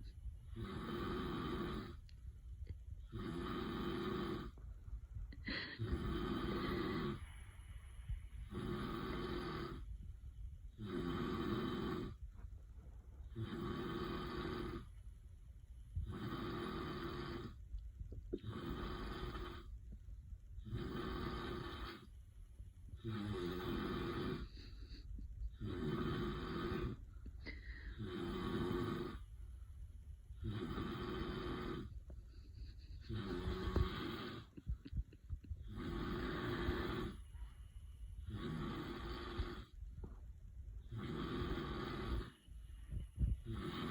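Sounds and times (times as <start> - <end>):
man snoring: 0.5 - 2.0, 3.1 - 4.6, 5.4 - 7.3, 8.4 - 9.9, 10.8 - 12.2, 13.3 - 14.9, 16.0 - 17.6, 18.4 - 19.7, 20.6 - 22.1, 23.0 - 25.0, 25.6 - 29.2, 30.4 - 31.9, 32.6 - 37.2, 38.2 - 39.8, 40.9 - 42.4, 43.2 - 43.9.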